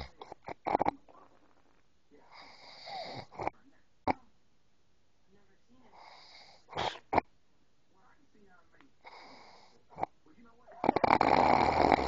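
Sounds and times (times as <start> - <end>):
sharp snort: 6.0 - 7.3, 10.8 - 12.0
man snoring: 10.8 - 12.0.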